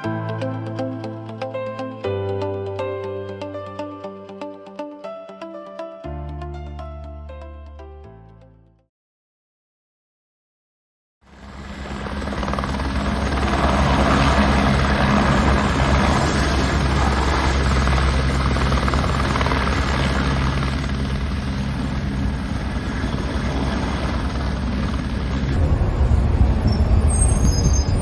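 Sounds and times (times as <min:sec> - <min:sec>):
engine rumble: 0:15.4 - 0:28.0.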